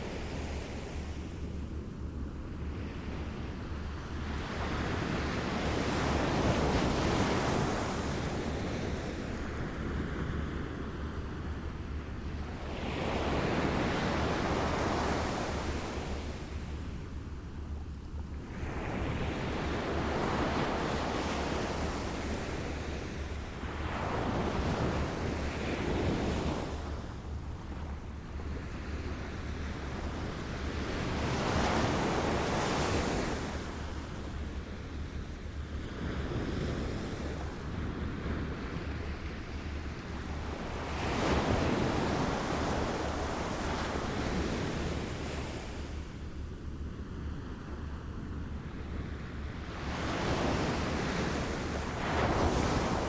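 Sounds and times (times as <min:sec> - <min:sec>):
wind rumble on microphone: 0:00.0 - 0:53.0
small waves lapping on shore: 0:49.6 - 0:53.0.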